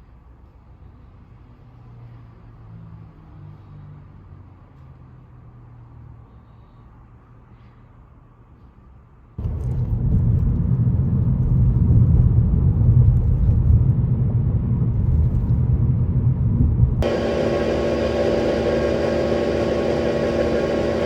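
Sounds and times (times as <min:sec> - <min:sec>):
vehicle rumble: 0:00.0 - 0:21.0
steady hum with held tones: 0:17.0 - 0:21.0.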